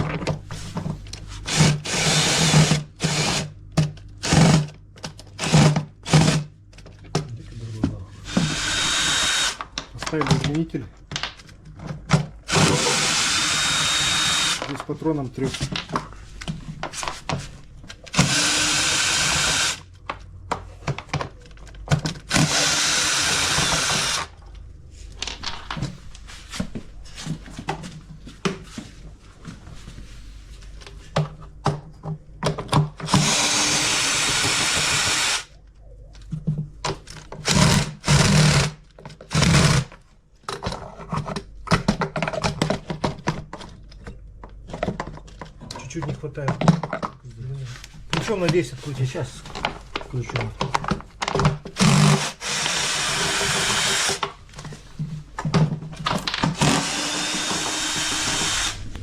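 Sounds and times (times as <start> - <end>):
power drill running: 1.5 - 3.5, 4.2 - 4.7, 5.4 - 6.5, 8.2 - 9.6, 12.5 - 14.7, 18.1 - 19.8, 22.3 - 24.3, 33.1 - 35.5, 37.4 - 38.7, 51.8 - 54.2, 56.6 - 58.9.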